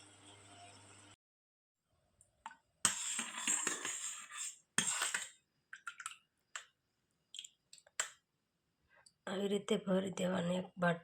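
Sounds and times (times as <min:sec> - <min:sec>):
kitchen utensils clinking and scraping: 0:02.9 - 0:05.3.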